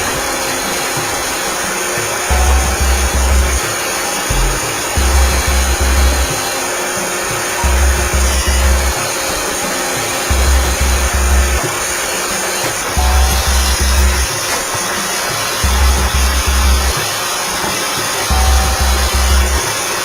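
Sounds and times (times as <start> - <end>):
background music with bass beat: 2.3 - 6.5, 7.6 - 9.1, 10.3 - 11.7, 13.0 - 14.4, 15.6 - 17.0, 18.3 - 19.7.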